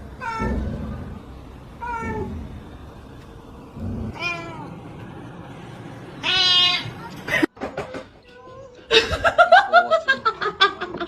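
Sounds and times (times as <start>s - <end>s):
cat meowing: 0.2s - 0.8s, 1.8s - 2.4s, 4.1s - 4.7s, 6.2s - 7.0s.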